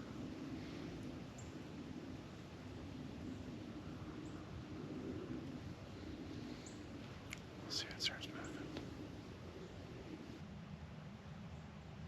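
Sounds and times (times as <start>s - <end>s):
faint steady hiss: 5.8s - 10.4s.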